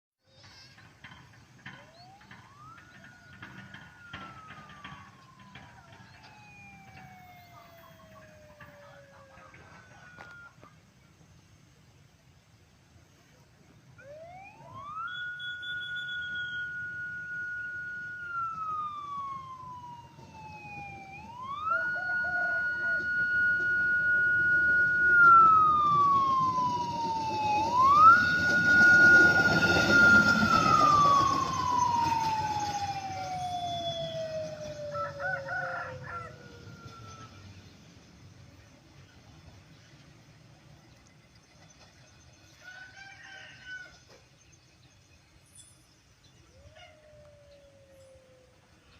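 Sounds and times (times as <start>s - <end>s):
rail vehicle running noise: 0.3s - 14.0s, 14.7s - 42.6s
wailing siren: 1.6s - 10.7s, 14.0s - 38.0s, 46.4s - 48.9s.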